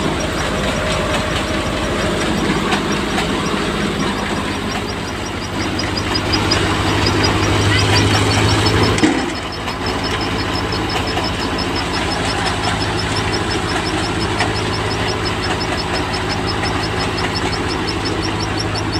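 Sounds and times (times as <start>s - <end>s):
farm machinery engine idling: 0.0s - 18.9s
high chirp: 0.0s - 18.9s.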